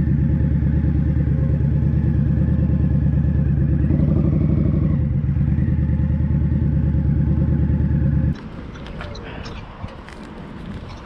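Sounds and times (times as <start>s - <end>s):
motorcycle engine running: 0.0s - 8.4s.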